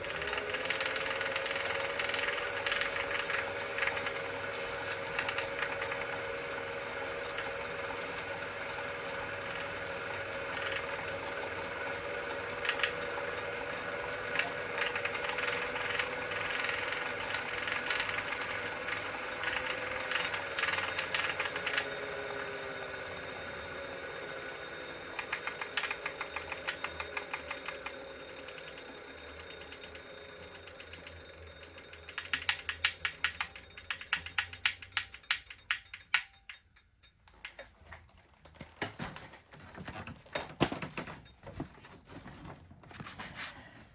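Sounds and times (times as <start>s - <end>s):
ratchet-like ticking: 0.0s - 6.6s, 11.9s - 37.6s
bike trainer whine: 0.0s - 37.7s.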